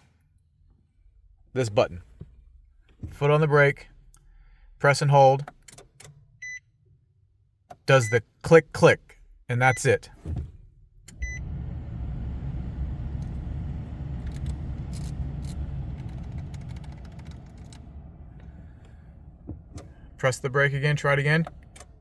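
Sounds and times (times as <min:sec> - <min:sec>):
low rumble: 0:11.1 - 0:21.8
short electronic beep: 0:11.2 - 0:11.5.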